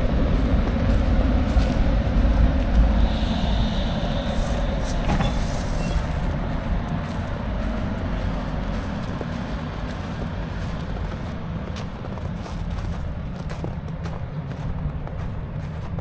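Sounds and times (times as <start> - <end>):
tram wheels rumbling on rail: 0.0 - 16.0
high squeal: 2.6 - 7.4.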